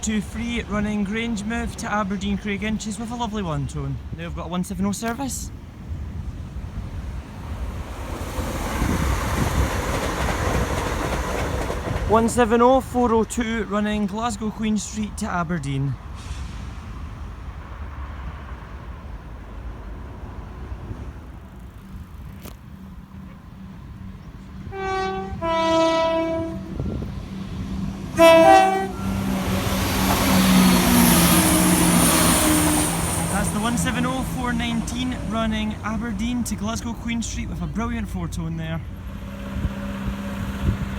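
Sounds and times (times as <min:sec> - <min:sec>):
diesel train passing: 0:00.0 - 0:40.9
wind buffeting microphone: 0:05.5 - 0:12.5, 0:16.0 - 0:37.5, 0:38.8 - 0:40.9
train horn: 0:24.6 - 0:27.1, 0:28.1 - 0:33.2.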